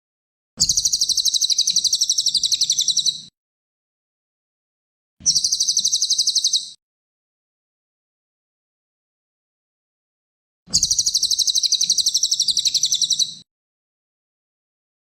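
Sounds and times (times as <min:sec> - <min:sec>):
songbird high-pitched trill: 0:00.6 - 0:03.3, 0:05.3 - 0:06.8, 0:10.8 - 0:13.4.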